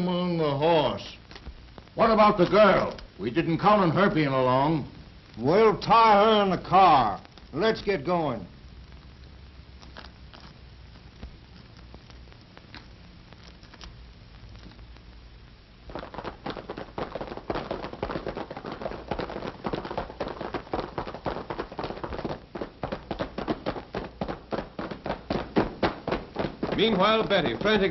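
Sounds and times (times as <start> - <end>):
faint crackle and hum: 0.0 - 27.9
galloping horses hoofbeats: 15.9 - 27.9.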